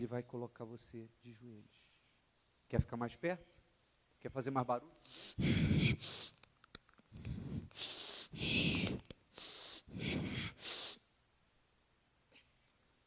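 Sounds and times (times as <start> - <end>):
person breathing heavily: 5.0 - 6.4, 7.1 - 11.0.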